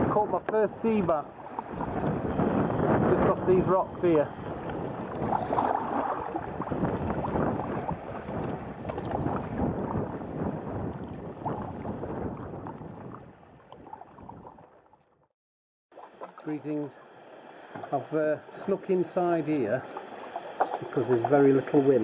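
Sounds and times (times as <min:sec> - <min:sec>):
wind buffeting microphone: 0:00.0 - 0:14.8
water lapping against hull: 0:00.0 - 0:15.3, 0:15.9 - 0:22.0.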